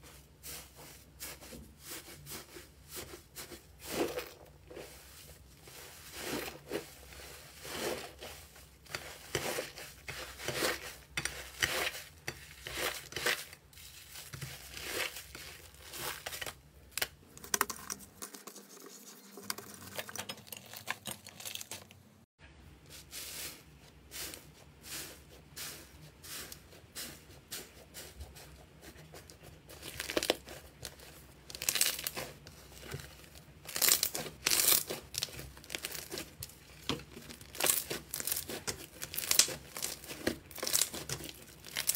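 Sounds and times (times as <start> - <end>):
slime squeezed crackling: 29.8 - 32.3, 37.2 - 41.9.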